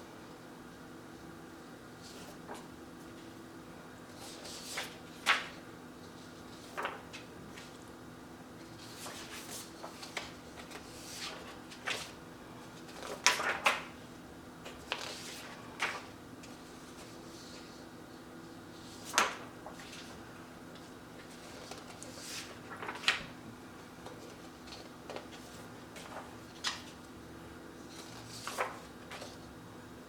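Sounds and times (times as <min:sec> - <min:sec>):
faint steady hum: 0:00.0 - 0:30.0
paper rustles: 0:02.0 - 0:03.3, 0:04.1 - 0:07.9, 0:08.6 - 0:14.0, 0:14.6 - 0:17.9, 0:18.6 - 0:27.2, 0:27.8 - 0:29.5.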